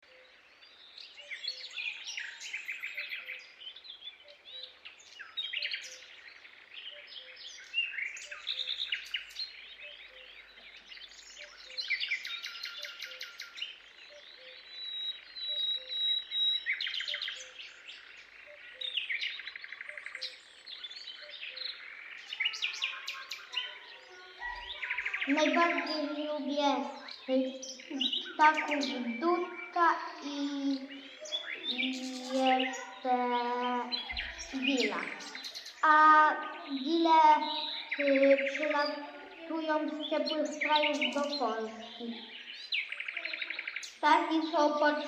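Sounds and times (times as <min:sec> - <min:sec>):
songbirds trilling and chirping: 0:00.0 - 0:45.0.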